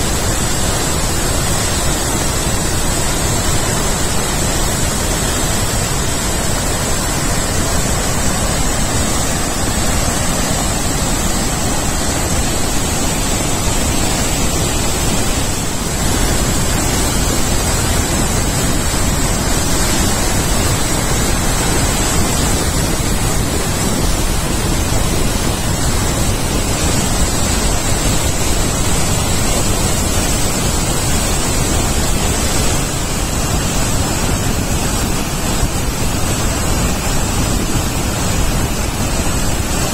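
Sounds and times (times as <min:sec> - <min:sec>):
waterfall roaring: 0:00.0 - 0:39.9.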